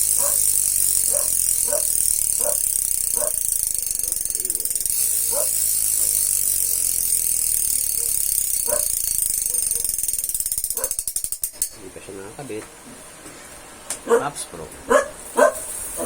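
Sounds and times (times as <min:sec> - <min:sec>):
bicycle hub freewheeling clicks: 0:00.0 - 0:11.9.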